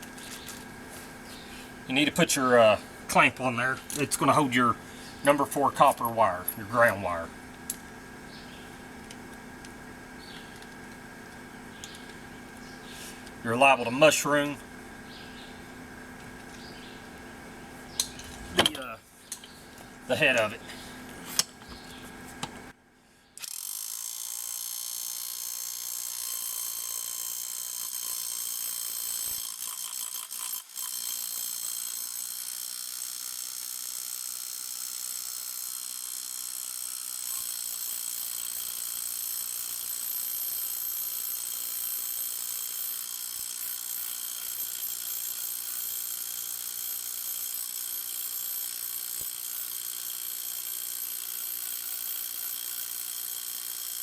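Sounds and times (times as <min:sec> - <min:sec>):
rotary hammer drill running: 0:23.4 - 0:54.0.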